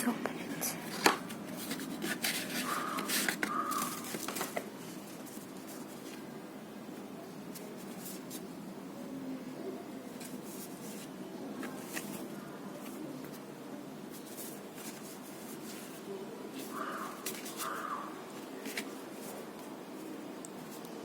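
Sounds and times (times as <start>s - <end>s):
rustling paper and plastic wrapping: 0.2s - 6.3s, 10.1s - 13.5s, 14.1s - 21.0s.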